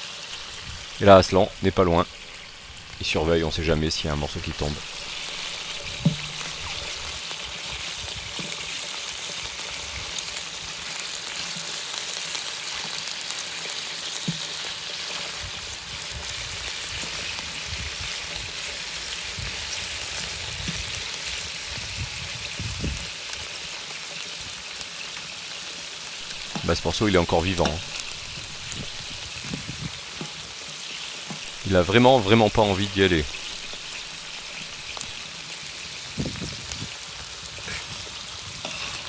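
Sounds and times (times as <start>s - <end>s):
meat sizzling in oil: 0.0s - 39.0s
sharp knock: 5.9s - 6.6s.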